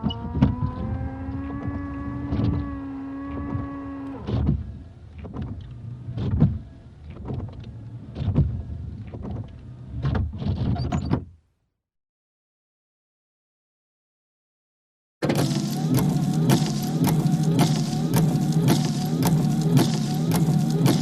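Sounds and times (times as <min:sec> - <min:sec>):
wiper motor whining: 0:00.0 - 0:10.7, 0:15.2 - 0:21.0.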